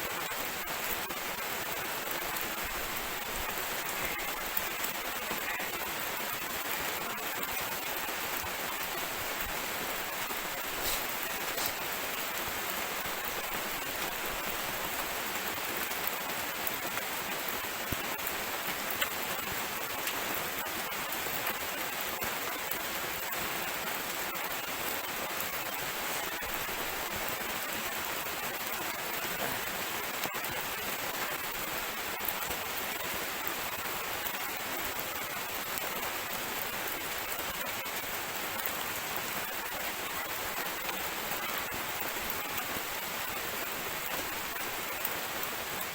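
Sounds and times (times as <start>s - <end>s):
drizzle hissing on surfaces: 10.3s - 12.3s.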